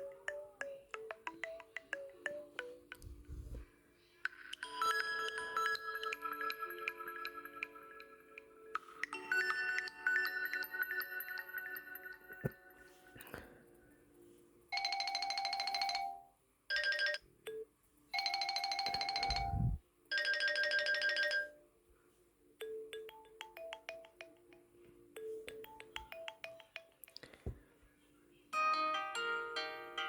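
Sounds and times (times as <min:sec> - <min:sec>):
gentle melodic ringtone: 0:00.0 - 0:03.6, 0:04.6 - 0:13.2, 0:14.7 - 0:21.6, 0:22.6 - 0:27.4, 0:28.6 - 0:30.0
fast-pulsing electronic ringtone: 0:14.8 - 0:17.2, 0:18.2 - 0:21.6.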